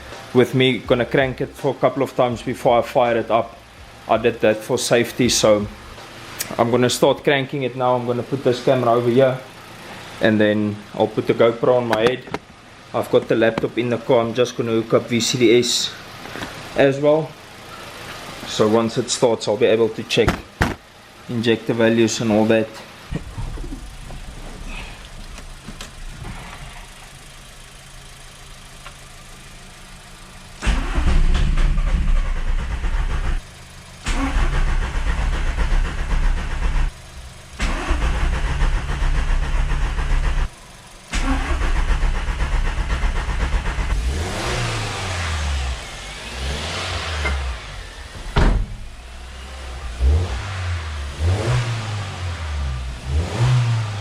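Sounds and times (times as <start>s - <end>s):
diesel engine cranking on starter: 23.0s - 29.3s, 30.4s - 54.0s
engine revving: 29.4s - 54.0s.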